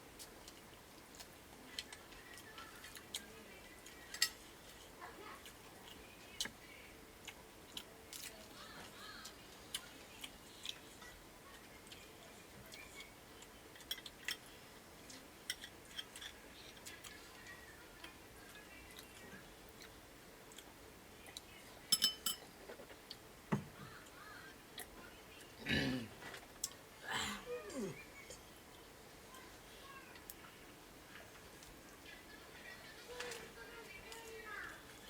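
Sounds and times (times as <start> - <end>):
chewing and eating by hand: 0.1 - 6.6, 7.2 - 21.6, 24.0 - 25.5.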